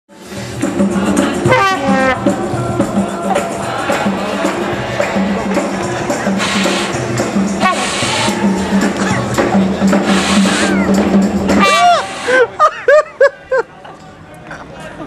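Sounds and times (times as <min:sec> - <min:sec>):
trumpet music with accompaniment: 0:00.1 - 0:12.4
hissy percussion burst: 0:06.1 - 0:12.5.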